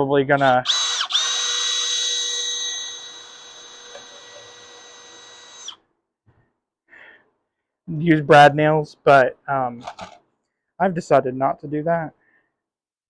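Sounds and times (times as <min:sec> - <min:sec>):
cordless drill motor whine: 0:00.4 - 0:05.8.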